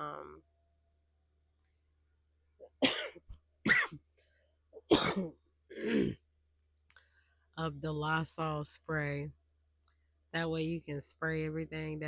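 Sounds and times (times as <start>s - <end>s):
woman coughing: 2.6s - 4.0s, 4.8s - 6.2s.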